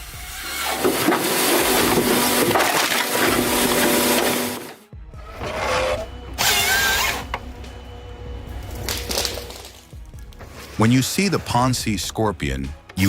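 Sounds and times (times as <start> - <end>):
saw cutting through log: 0.0 - 9.8
background music: 0.0 - 13.0
machine with wavering squeal: 5.2 - 8.6.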